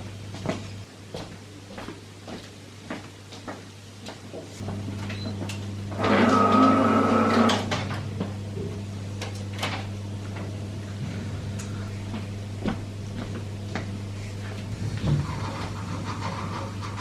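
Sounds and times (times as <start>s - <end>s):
steady low hum: 0.0s - 17.0s
loud mechanical noise: 4.6s - 17.0s.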